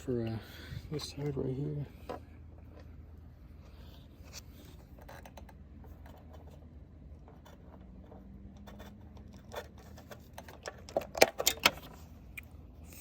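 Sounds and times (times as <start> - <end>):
hands handling wiring: 0.2 - 13.0.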